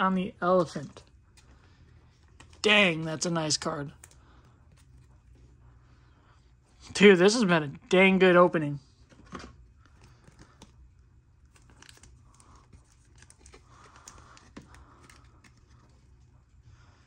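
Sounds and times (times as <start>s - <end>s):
trading cards being flipped: 11.4s - 15.9s.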